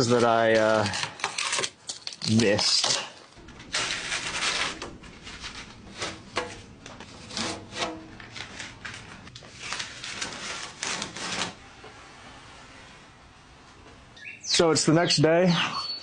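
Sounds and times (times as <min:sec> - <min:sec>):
rubbing or scraping strokes: 0:03.4 - 0:14.2.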